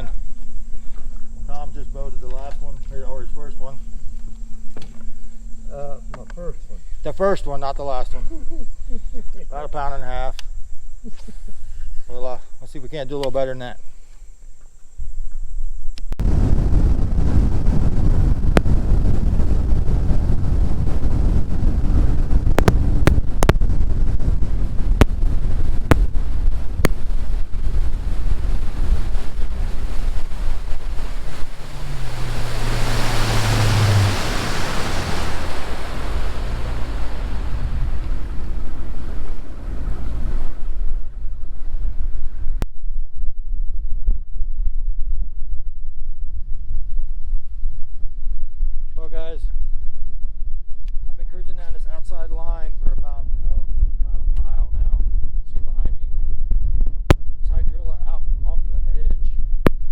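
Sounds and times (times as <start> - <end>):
low hum sliding down: 0.0 - 9.1, 16.2 - 42.6
wind rumbling on microphone: 0.0 - 59.9.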